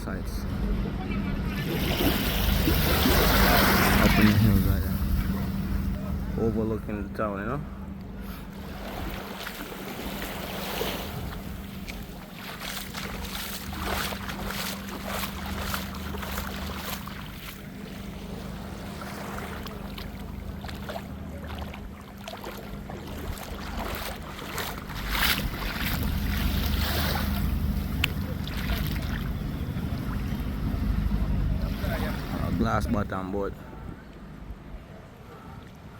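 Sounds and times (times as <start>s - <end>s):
steady low hum: 0.0s - 35.9s
waves washing on beach: 1.5s - 5.9s, 8.4s - 32.8s
wind buffeting microphone: 22.8s - 35.2s.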